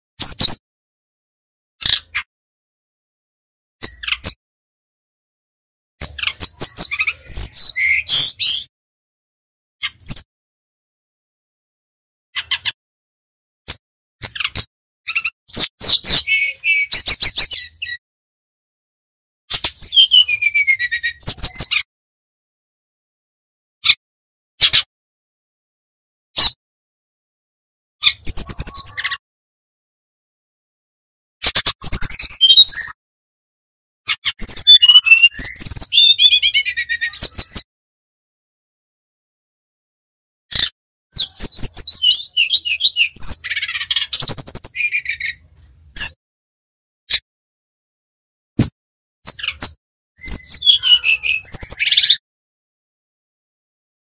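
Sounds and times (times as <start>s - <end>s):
bird whistling song: 0.2s - 0.6s, 6.0s - 8.7s, 9.8s - 10.3s, 14.2s - 18.0s, 19.6s - 21.9s, 28.0s - 29.2s, 31.6s - 33.0s, 34.1s - 37.7s, 40.5s - 45.4s, 48.6s - 52.2s.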